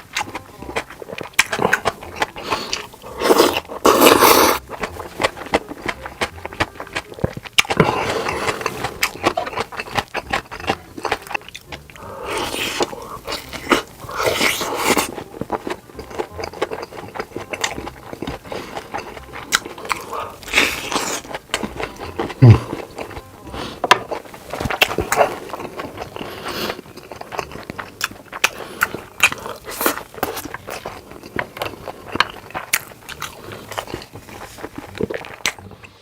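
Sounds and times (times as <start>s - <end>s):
person chewing food: 0.0s - 36.0s.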